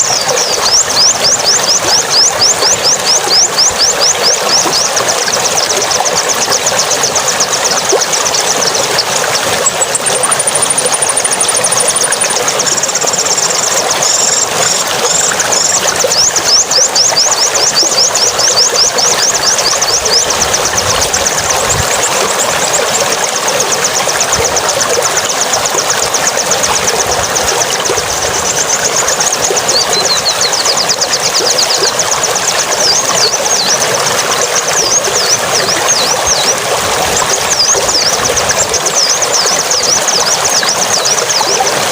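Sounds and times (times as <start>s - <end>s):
songbird chirping and trilling: 26.7s - 41.7s.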